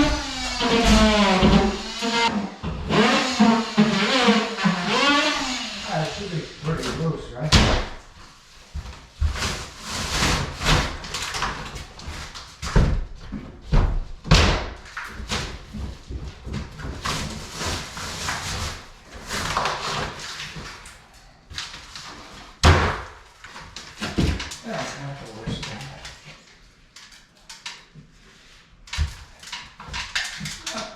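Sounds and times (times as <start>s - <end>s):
drywall knocking and cracking: 0.0s - 1.9s, 7.5s - 8.0s, 9.2s - 20.7s, 22.6s - 24.6s
drywall scraping and crumbling: 0.0s - 20.9s.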